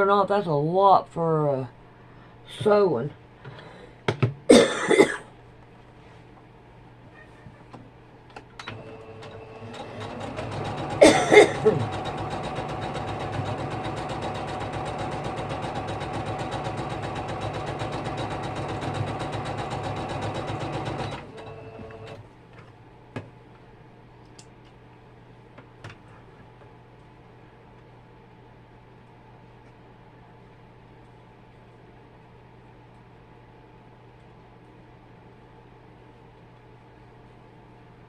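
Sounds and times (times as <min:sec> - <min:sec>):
electric sewing machine stitching: 0:08.7 - 0:22.2.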